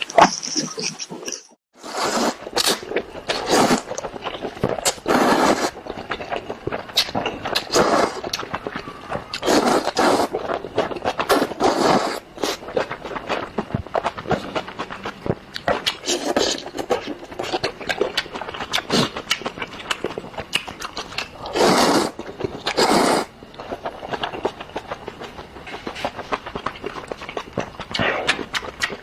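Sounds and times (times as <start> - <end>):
wet chewing and mouth clicks: 2.6 - 11.7, 12.3 - 21.6, 22.2 - 29.0
noodle slurps: 4.9 - 5.8, 7.6 - 8.4, 9.4 - 10.4, 11.2 - 12.6, 21.5 - 23.3.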